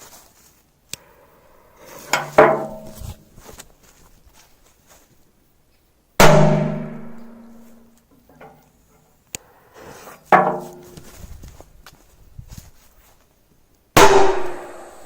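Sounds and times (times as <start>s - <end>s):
firecracker bangs: 6.2s - 7.5s, 14.0s - 15.0s.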